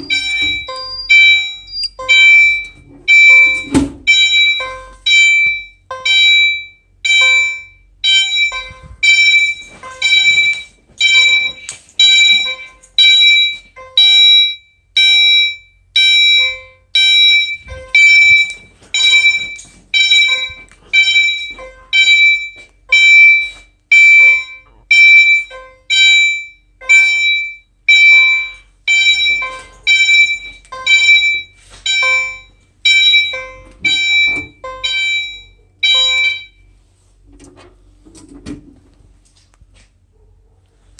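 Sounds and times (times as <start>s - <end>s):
fire alarm chime ringing: 0.0s - 36.7s.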